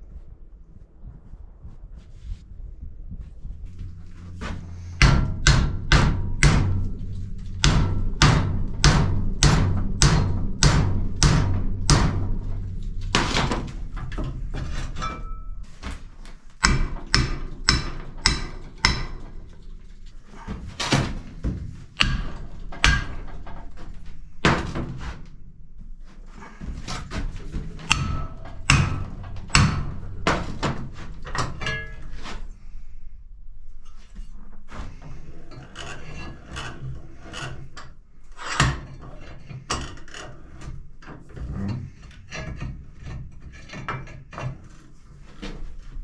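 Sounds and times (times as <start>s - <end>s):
hammer striking metal: 5.0s - 19.8s, 22.0s - 23.8s, 27.8s - 32.4s.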